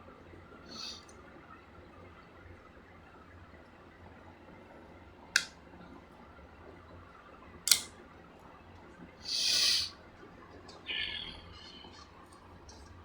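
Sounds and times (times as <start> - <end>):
ram stick clicking into slot: 7.7 - 7.9.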